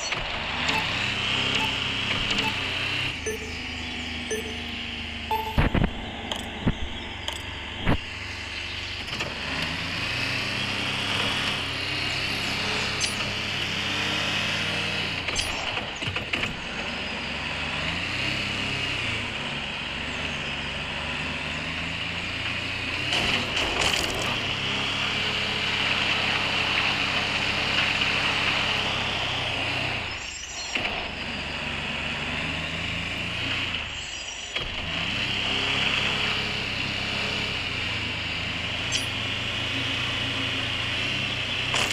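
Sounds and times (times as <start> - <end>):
off-road vehicle engine revving: 0.0 - 41.9
wind and tyre noise: 0.0 - 41.9.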